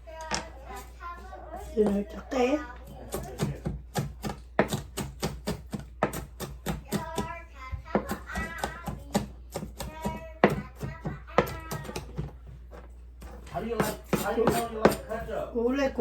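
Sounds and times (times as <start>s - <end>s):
knife chopping on cutting board: 2.8s - 15.3s.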